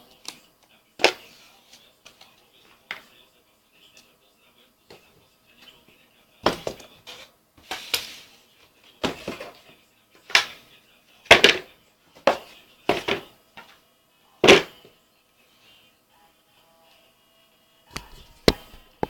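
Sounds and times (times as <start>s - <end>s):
knocks and thuds from packaging: 6.4s - 6.9s.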